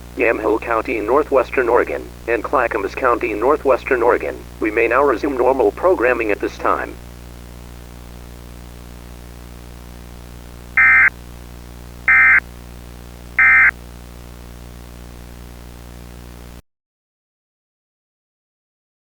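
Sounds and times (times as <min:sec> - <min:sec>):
steady low hum: 0:00.0 - 0:16.6
screechy digital data tones: 0:10.8 - 0:11.1, 0:12.1 - 0:12.4, 0:13.4 - 0:13.7.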